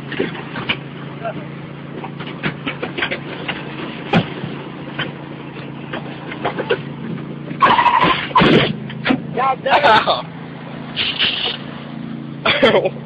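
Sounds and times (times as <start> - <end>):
knocks and rattles: 0.0 - 9.3
riding lawn mower engine running: 0.0 - 13.0
loud burst of noise: 10.9 - 11.7.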